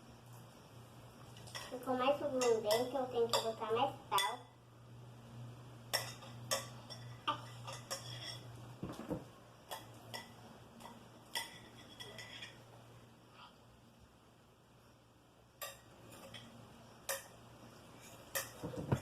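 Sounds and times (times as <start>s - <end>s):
spoon clinking on a plate: 5.9s - 9.1s, 9.7s - 12.6s, 15.6s - 17.4s, 18.0s - 19.0s.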